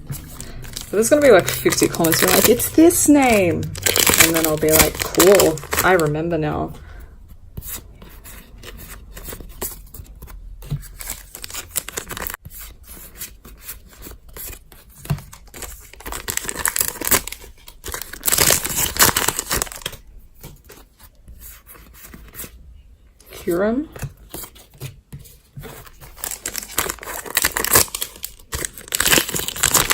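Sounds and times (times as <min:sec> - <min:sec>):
foil wrappers tearing and crinkling: 0:00.2 - 0:06.1, 0:10.9 - 0:12.4, 0:15.3 - 0:20.0, 0:25.8 - 0:29.9.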